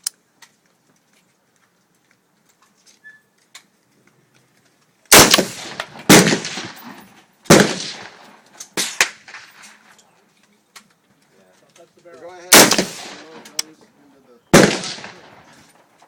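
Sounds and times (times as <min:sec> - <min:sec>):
faint sharp cracks: 0:03.4 - 0:11.0
rifle shots with echo: 0:05.1 - 0:09.7, 0:12.5 - 0:13.6, 0:14.5 - 0:15.7.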